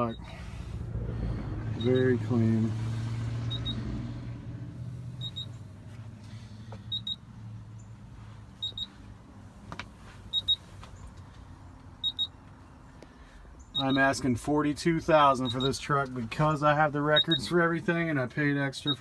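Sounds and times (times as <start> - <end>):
low hum: 0.1 - 7.2
high double beep: 1.8 - 2.2, 17.2 - 17.5.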